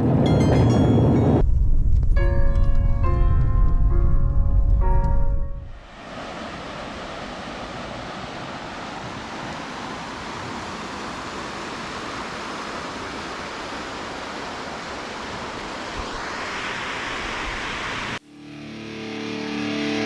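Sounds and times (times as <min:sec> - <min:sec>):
river water flowing: 0:05.8 - 0:20.0.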